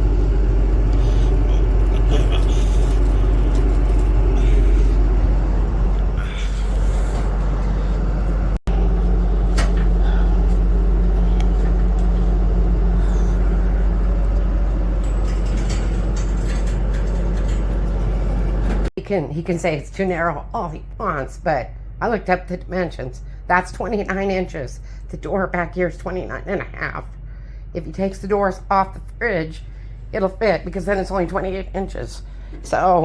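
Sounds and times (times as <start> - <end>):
truck engine rumbling: 0.0 - 18.9.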